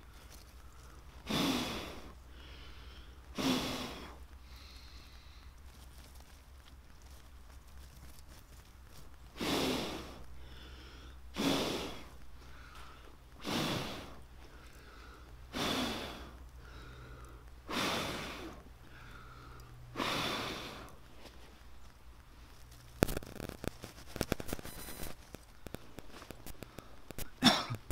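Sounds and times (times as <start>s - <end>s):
person blowing hard: 1.3s - 2.0s, 3.4s - 4.1s, 9.4s - 10.1s, 11.4s - 12.0s, 13.4s - 14.2s, 15.5s - 16.3s, 17.7s - 18.6s.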